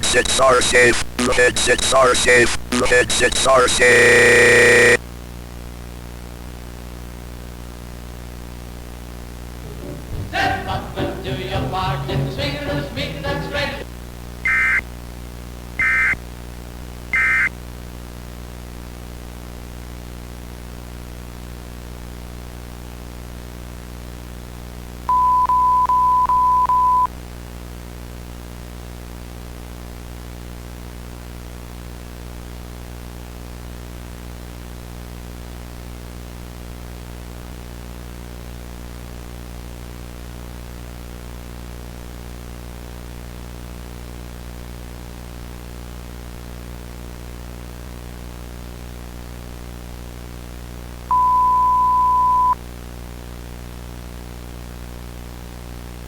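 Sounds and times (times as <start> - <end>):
steady pure tone: 0.0 - 5.0, 9.6 - 13.8, 14.5 - 14.8, 15.8 - 16.2, 17.2 - 17.5, 51.1 - 52.6
electrical hum with static hiss: 0.0 - 56.0
short high beeps: 14.5 - 14.8, 15.8 - 16.2, 17.2 - 17.5, 25.1 - 27.1, 51.1 - 52.6.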